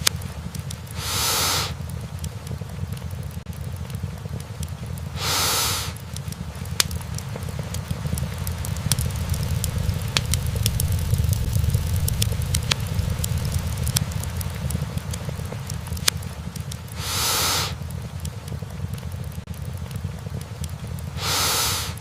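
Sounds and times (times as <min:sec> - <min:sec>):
fire rumbling: 0:00.0 - 0:22.0
logs crackling and popping: 0:00.0 - 0:22.0
short loud hiss: 0:01.0 - 0:01.8, 0:05.2 - 0:06.0, 0:17.0 - 0:17.8, 0:21.2 - 0:22.0.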